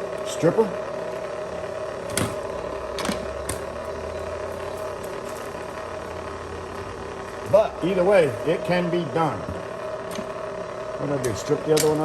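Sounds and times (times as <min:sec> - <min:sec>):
low mechanical rumble: 0:00.0 - 0:12.0
steady background hum: 0:00.0 - 0:12.0
wire stripper clicks: 0:11.2 - 0:12.0.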